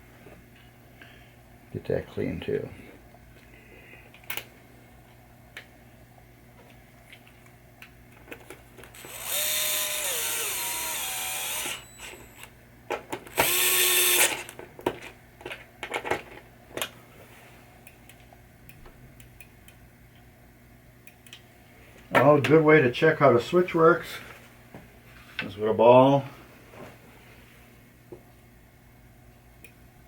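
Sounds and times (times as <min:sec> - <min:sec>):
clicks and knocks of parts handled: 0:06.6 - 0:09.1, 0:14.4 - 0:17.0
power drill running: 0:08.9 - 0:12.5, 0:13.3 - 0:14.6.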